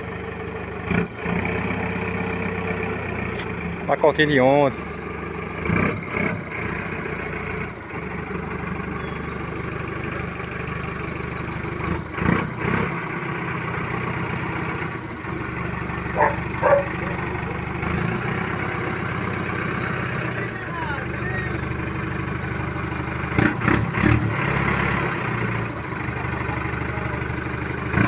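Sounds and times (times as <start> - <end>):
vehicle engine running: 0.0 - 28.0.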